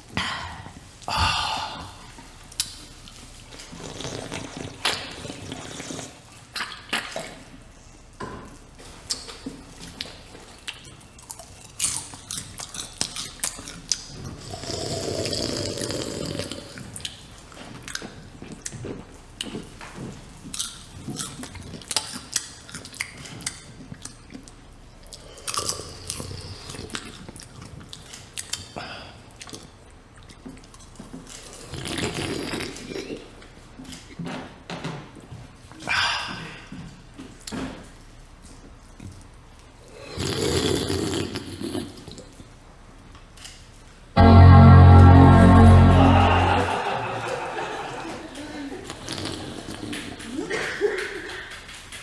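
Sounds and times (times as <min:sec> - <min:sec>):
noisy swell: 0:44.2 - 0:47.6.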